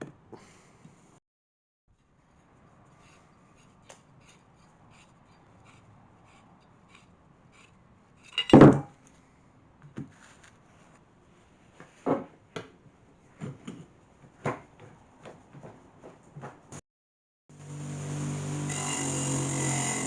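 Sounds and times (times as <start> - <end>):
metal tools ticking and tapping: 8.2 - 8.7
loud metallic clank: 8.4 - 8.9.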